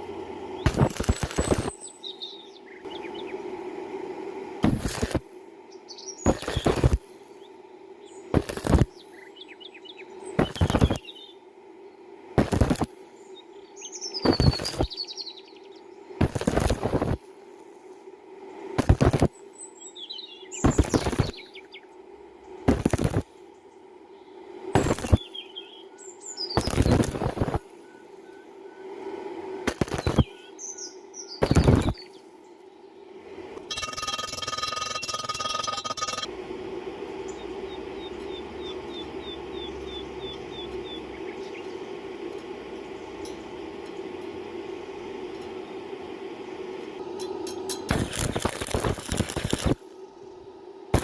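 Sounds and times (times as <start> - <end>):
welding arc crackling: 0.0 - 1.9, 4.6 - 5.4, 6.2 - 7.1, 8.3 - 9.0, 10.4 - 11.1, 12.4 - 12.9, 14.2 - 15.0, 16.2 - 17.7, 18.8 - 19.4, 20.6 - 21.6, 22.6 - 23.4, 24.7 - 25.3, 26.5 - 28.4, 29.6 - 30.4, 31.4 - 32.2, 33.4 - 50.0
birds chirping: 0.0 - 3.6, 5.6 - 17.1, 19.1 - 29.1, 29.7 - 36.3, 36.9 - 46.0
steady hum: 0.0 - 51.0.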